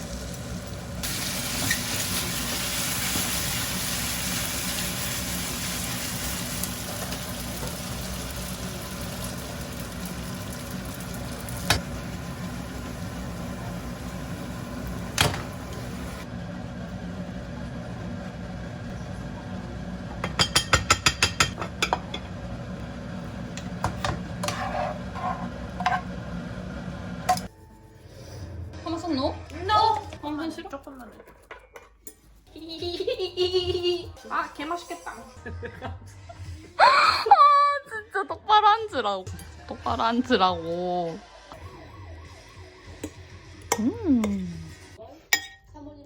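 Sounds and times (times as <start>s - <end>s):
food sizzling in oil: 0.0s - 16.3s
utensils clinking on pan: 20.2s - 22.2s.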